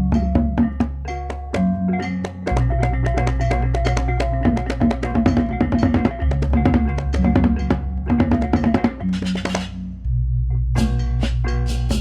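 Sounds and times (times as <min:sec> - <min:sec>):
rapid drum strokes: 0:02.5 - 0:09.8.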